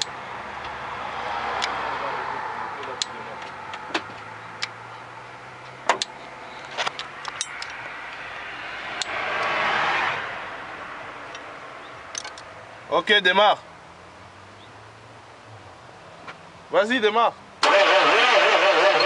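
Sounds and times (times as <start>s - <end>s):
sharp clicks and taps: 2.8s - 4.8s.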